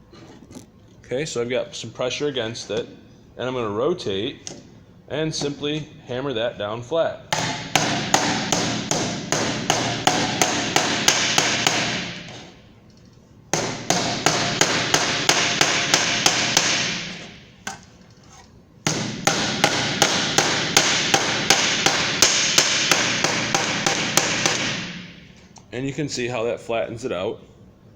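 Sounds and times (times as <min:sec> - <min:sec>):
hammer striking sheet metal: 0:07.4 - 0:12.5, 0:13.5 - 0:17.5, 0:18.9 - 0:25.3.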